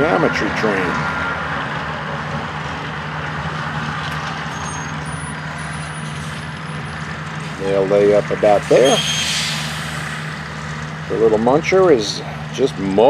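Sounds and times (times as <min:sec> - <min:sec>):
faint high-pitched squeals: 0:08.5 - 0:11.4.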